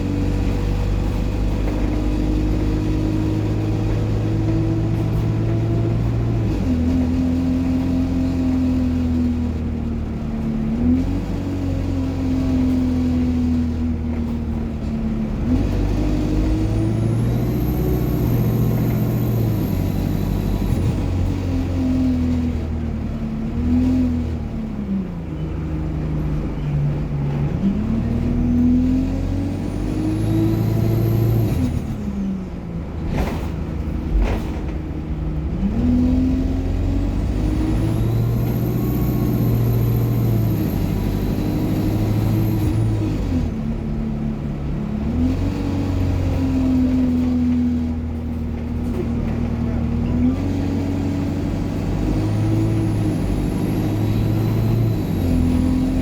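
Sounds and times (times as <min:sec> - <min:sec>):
bus engine changing gears: 0:00.0 - 0:56.0.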